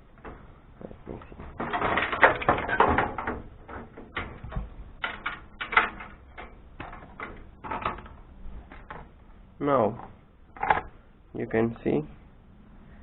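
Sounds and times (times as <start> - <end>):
computer parts clicking and clattering: 1.1 - 9.1.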